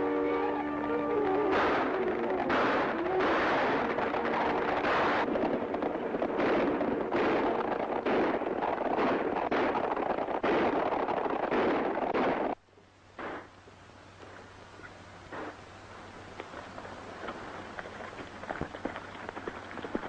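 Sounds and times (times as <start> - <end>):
rumbling: 0.0 - 20.0
gunfire: 1.3 - 12.6, 13.2 - 13.5.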